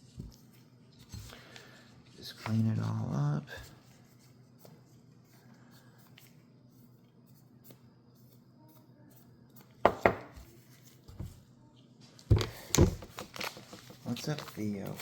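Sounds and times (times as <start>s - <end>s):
knocks on a hard surface: 9.9s - 10.3s.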